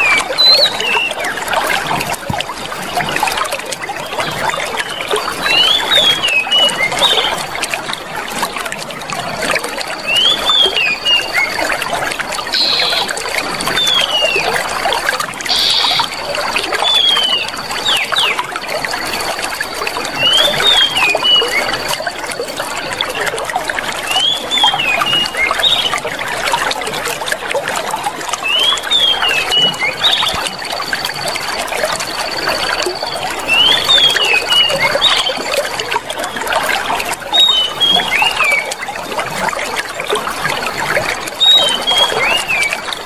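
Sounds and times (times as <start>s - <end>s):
bird singing whistled phrases: 0.0s - 1.4s, 4.8s - 7.4s, 10.0s - 11.8s, 12.5s - 14.6s, 15.5s - 19.2s, 20.2s - 21.9s, 24.1s - 26.0s, 28.4s - 31.3s, 31.9s - 36.5s, 37.3s - 38.8s, 41.4s - 42.9s
water flowing and trickling: 0.0s - 43.0s.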